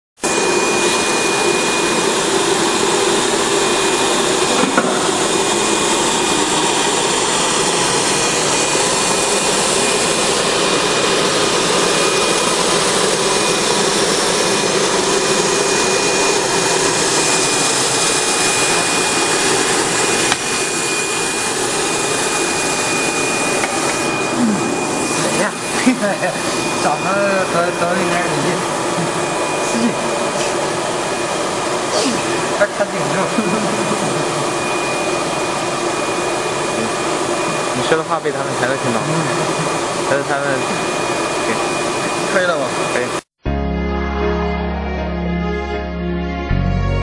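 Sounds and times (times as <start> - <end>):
thin high whistle: 22.4 - 30.6.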